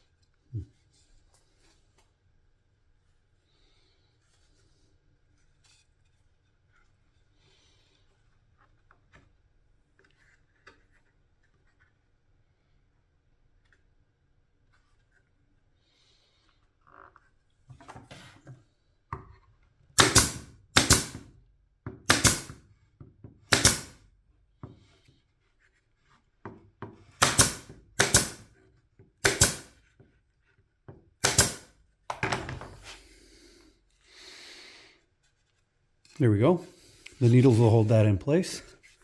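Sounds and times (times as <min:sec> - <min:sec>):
sharp knocks of pins tapped: 0:27.2 - 0:28.4, 0:31.2 - 0:32.3.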